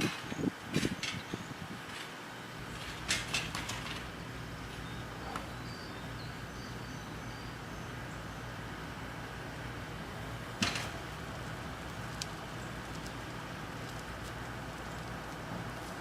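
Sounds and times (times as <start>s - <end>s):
handling rustle and clatter: 0.0s - 5.6s
vehicle engine humming: 0.0s - 16.0s.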